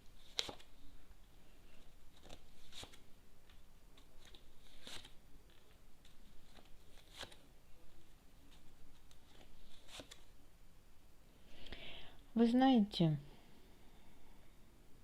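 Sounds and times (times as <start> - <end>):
cards snapping: 0.2 - 0.7, 6.5 - 7.4
cards ticking and rustling: 0.2 - 0.8, 1.7 - 7.5.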